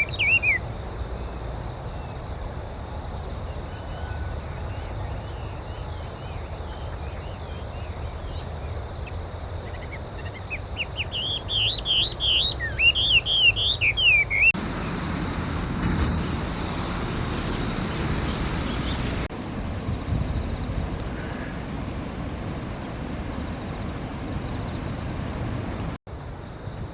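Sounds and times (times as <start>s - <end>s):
bird singing whistled phrases: 0.0s - 0.6s, 9.8s - 14.6s
insects trilling: 0.0s - 26.9s
rushing background noise: 0.0s - 26.9s.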